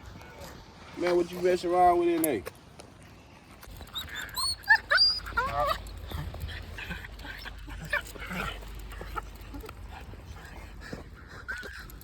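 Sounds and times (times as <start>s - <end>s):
puppy yipping and whining: 3.8s - 9.7s.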